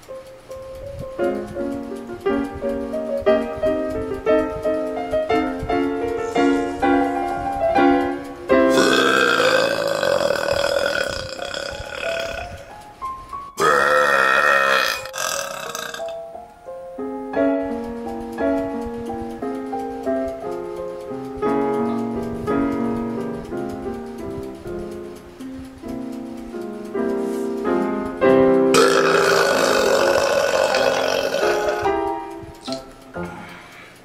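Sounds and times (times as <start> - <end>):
piano music: 0.0 - 34.0
man burping loudly: 8.7 - 12.6, 13.6 - 16.2, 28.8 - 31.9.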